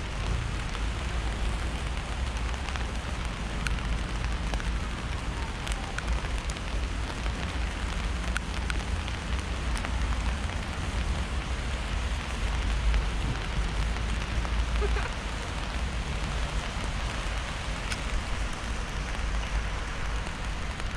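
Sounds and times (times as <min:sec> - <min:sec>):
river water rushing: 0:16.4 - 0:20.9.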